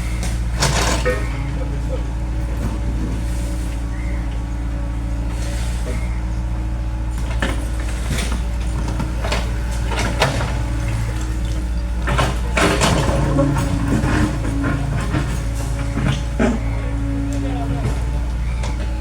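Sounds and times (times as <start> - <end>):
diesel engine running: 0.0 - 19.0
knocks and clatter: 0.2 - 1.4, 7.1 - 19.0.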